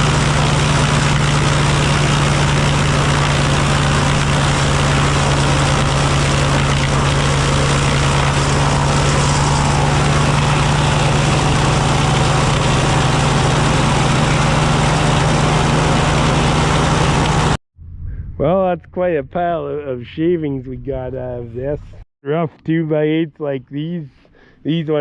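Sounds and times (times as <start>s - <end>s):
wood planer running: 0.0s - 17.6s
tractor engine drone: 0.0s - 20.6s.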